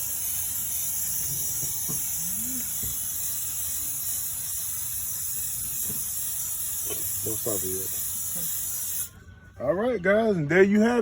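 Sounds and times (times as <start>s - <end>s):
aerosol can spraying hiss: 0.0s - 9.2s.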